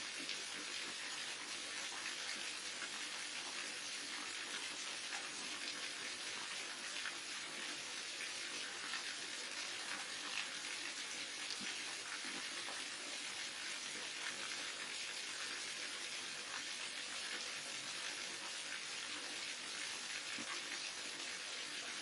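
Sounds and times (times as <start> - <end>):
small waterfall rushing: 0.0 - 22.0.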